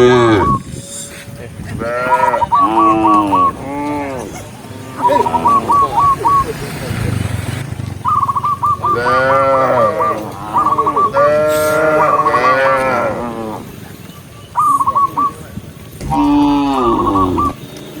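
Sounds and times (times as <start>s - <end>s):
cows mooing: 0.0s - 0.6s, 1.8s - 5.9s, 8.9s - 13.7s, 16.0s - 17.6s.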